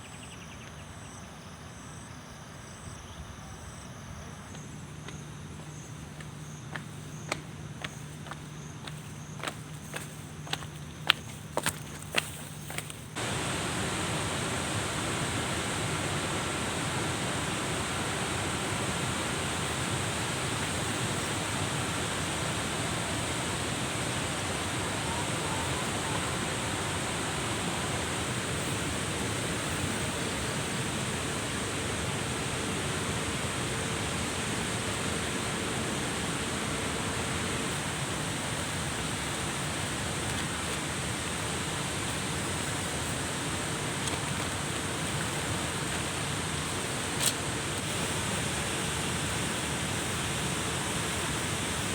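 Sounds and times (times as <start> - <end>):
flowing water rushing: 13.2 - 51.9.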